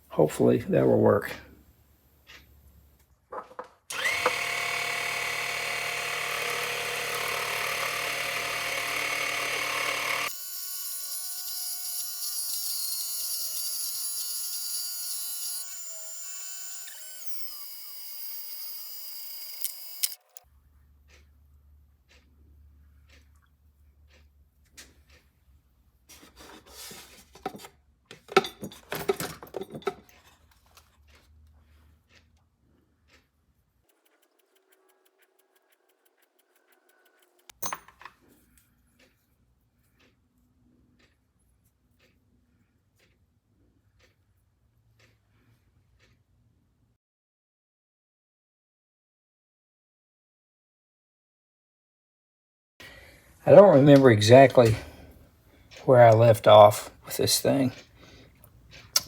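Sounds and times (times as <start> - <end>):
lathe motor whining: 3.9 - 20.4
tool cutting metal: 3.9 - 20.4
clicks: 33.9 - 38.1.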